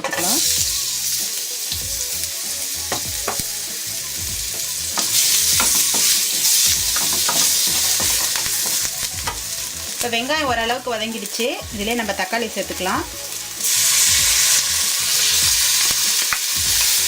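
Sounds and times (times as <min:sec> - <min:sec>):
onion sizzling in hot oil: 0:00.0 - 0:17.0
spoon scraping a pan: 0:04.6 - 0:09.6.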